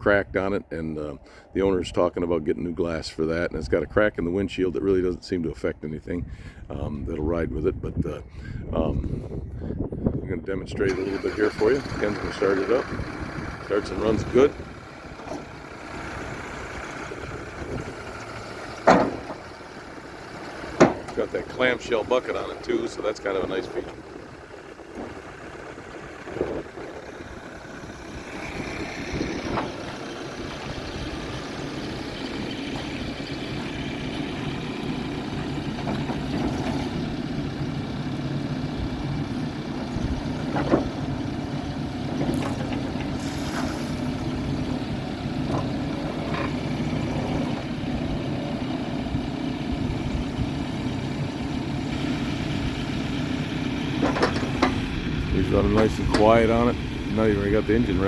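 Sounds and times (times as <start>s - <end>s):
diesel engine running at low revs: 0.0s - 58.0s
machine knocks: 18.8s - 19.4s.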